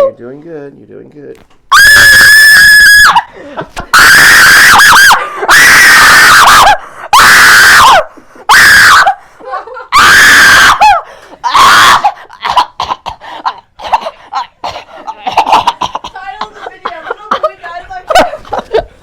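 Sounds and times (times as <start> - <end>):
boy screaming in fright: 1.7 - 3.3, 4.0 - 9.2, 9.9 - 12.2.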